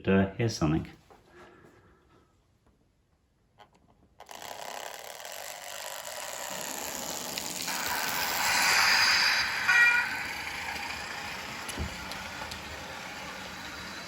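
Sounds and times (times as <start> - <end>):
diesel locomotive engine starting: 6.2 - 14.0.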